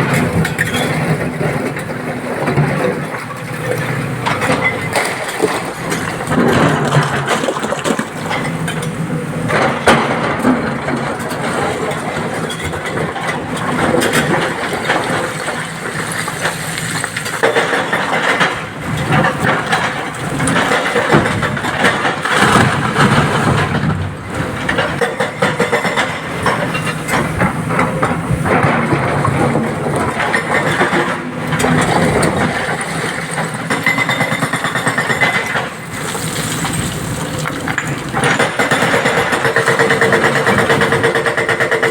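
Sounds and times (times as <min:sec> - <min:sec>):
diesel excavator engine under load: 0:00.0 - 0:41.9
rock knocking and clattering: 0:31.5 - 0:39.0.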